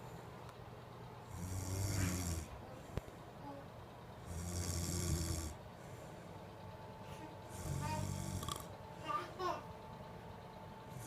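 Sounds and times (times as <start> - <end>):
person snoring: 1.3 - 2.5, 4.2 - 5.6, 7.5 - 8.7.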